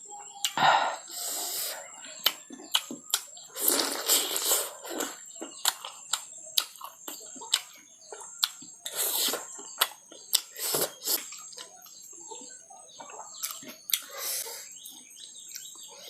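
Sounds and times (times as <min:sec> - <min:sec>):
person chewing with wet smacking: 0:02.2 - 0:12.0, 0:13.0 - 0:14.2.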